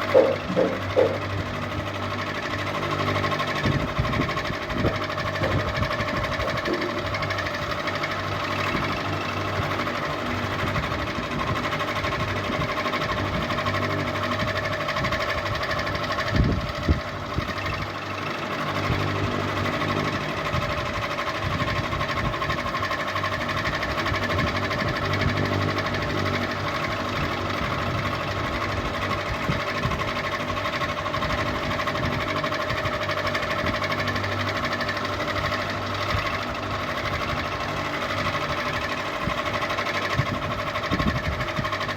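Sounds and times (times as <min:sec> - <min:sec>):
ceiling fan running: 0:00.0 - 0:41.9
sharp knocks: 0:00.1 - 0:01.2.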